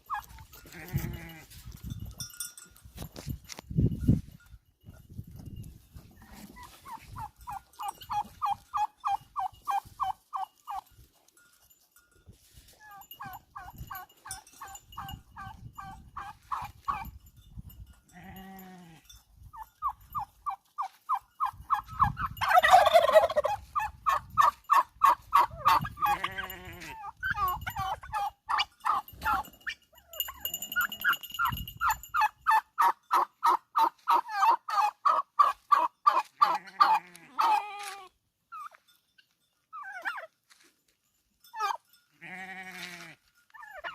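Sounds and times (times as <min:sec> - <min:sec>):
goats bleating: 0:00.6 - 0:01.6, 0:26.0 - 0:27.1, 0:36.3 - 0:38.0, 0:42.2 - 0:43.2.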